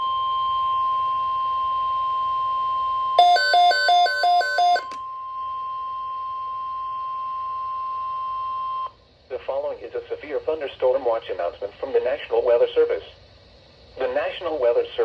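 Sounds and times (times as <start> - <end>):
steady high warning tone: 0.1 - 8.9.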